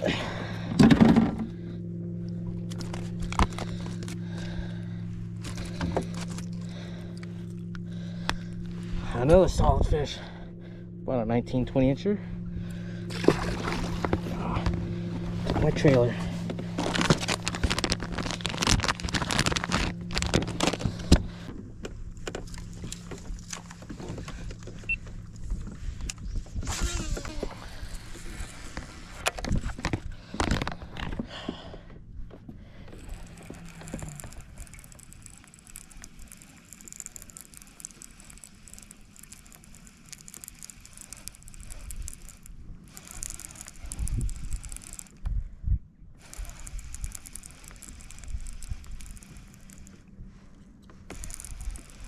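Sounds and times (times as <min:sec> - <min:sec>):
steady low hum: 0:00.0 - 0:52.0
fish splashing: 0:13.1 - 0:14.7.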